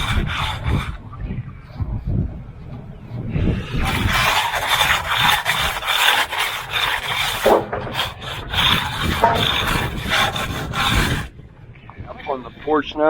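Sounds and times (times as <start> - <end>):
concrete finishing tool scraping: 0.0 - 1.0, 3.0 - 11.4.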